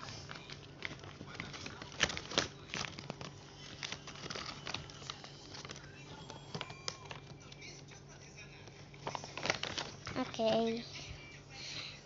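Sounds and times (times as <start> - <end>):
plastic packaging crinkling: 0.0 - 7.7, 8.7 - 10.8.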